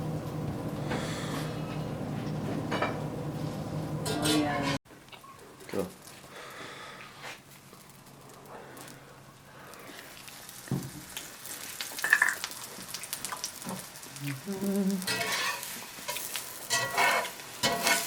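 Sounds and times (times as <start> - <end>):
oil crackles and clicks: 4.9 - 18.0
food sizzling in hot oil: 9.6 - 18.0.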